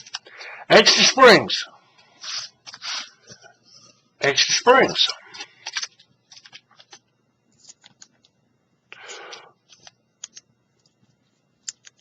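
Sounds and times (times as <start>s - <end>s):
small parts clicking and tapping: 11.6s - 12.0s.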